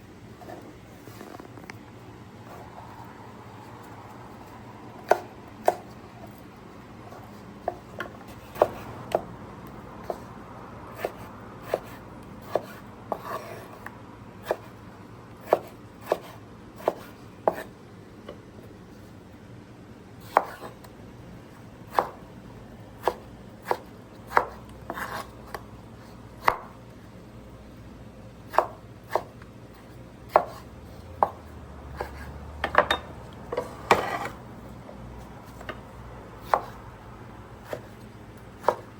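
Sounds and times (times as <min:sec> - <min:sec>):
knife chopping on cutting board: 0:05.0 - 0:06.4, 0:07.2 - 0:09.3, 0:10.0 - 0:10.3, 0:10.9 - 0:14.8, 0:15.4 - 0:17.7, 0:20.2 - 0:20.9, 0:21.9 - 0:22.2, 0:23.0 - 0:25.7, 0:26.4 - 0:26.8, 0:28.5 - 0:34.4, 0:35.4 - 0:36.9, 0:37.6 - 0:38.9.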